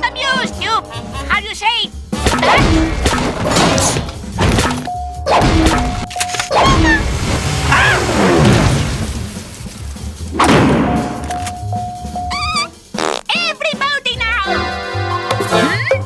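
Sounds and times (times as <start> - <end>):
background music: 0.0 - 6.0, 10.5 - 16.0
cartoon whacks and crashes: 2.2 - 11.5.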